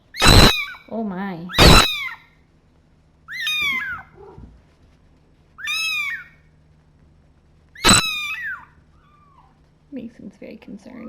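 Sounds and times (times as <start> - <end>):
kitten meowing: 0.0 - 0.8, 1.5 - 2.2, 3.3 - 4.4, 5.6 - 6.4, 7.8 - 9.6.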